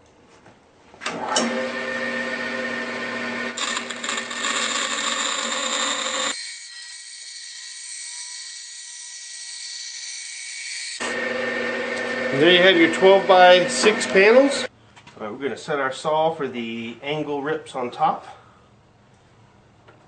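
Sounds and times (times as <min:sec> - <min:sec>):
band saw cutting plastic: 0:01.4 - 0:14.7.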